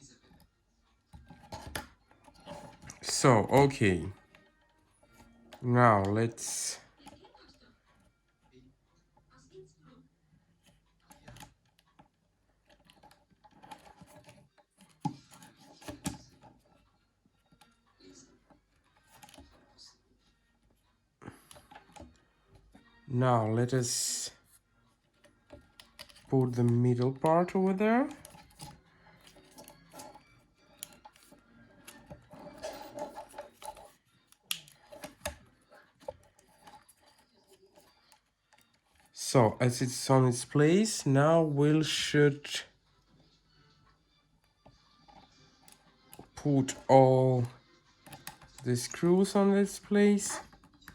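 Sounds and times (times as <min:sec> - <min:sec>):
plastic parts clicking and scraping: 0:01.1 - 0:04.3, 0:10.6 - 0:16.8, 0:18.4 - 0:19.7, 0:25.1 - 0:40.6, 0:45.1 - 0:50.9
plastic parts clicking: 0:25.2 - 0:39.2.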